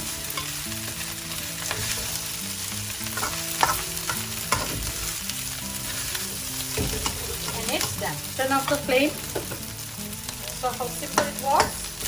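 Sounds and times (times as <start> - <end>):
rice sizzling in a wok: 0.0 - 12.0.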